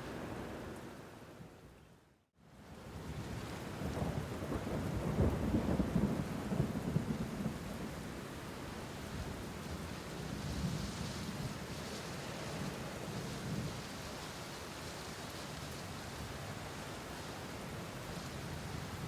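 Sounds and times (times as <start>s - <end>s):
steady rain: 0.0s - 19.0s
rolling thunder: 3.8s - 7.8s.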